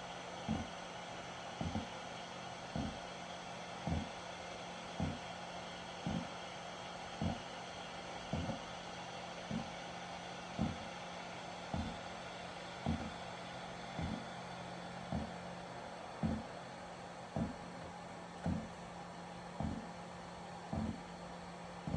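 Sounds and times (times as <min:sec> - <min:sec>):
air conditioner low hum: 0:00.0 - 0:21.9
air conditioner knocking: 0:00.5 - 0:00.8, 0:01.6 - 0:01.9, 0:02.8 - 0:03.0, 0:03.9 - 0:04.2, 0:05.0 - 0:05.3, 0:06.1 - 0:06.3, 0:07.2 - 0:07.5, 0:08.3 - 0:08.7, 0:09.5 - 0:09.8, 0:10.6 - 0:10.9, 0:11.7 - 0:12.1, 0:12.8 - 0:13.3, 0:14.0 - 0:14.4, 0:15.0 - 0:15.5, 0:16.2 - 0:16.6, 0:17.3 - 0:21.2.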